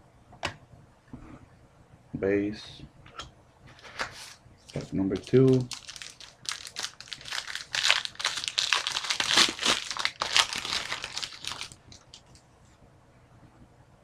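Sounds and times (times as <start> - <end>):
wrapper tearing and crinkling: 5.1 - 12.4.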